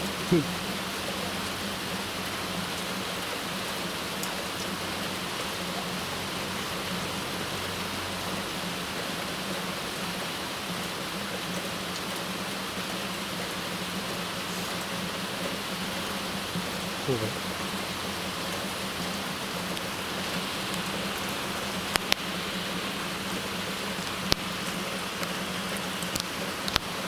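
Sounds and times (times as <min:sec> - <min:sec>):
heavy rain falling: 0:00.0 - 0:27.0.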